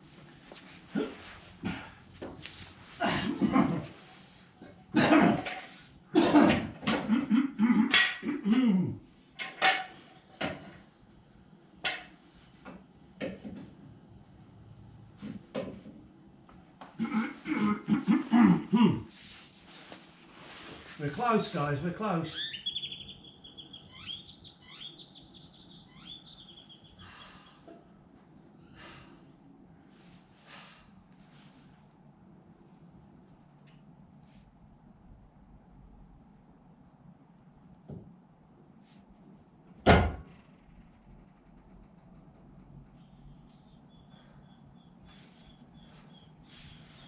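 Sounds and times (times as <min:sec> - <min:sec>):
soft rustling: 0:00.0 - 0:03.0, 0:19.1 - 0:21.6
bird whistling faintly: 0:22.3 - 0:27.6, 0:43.0 - 0:47.0.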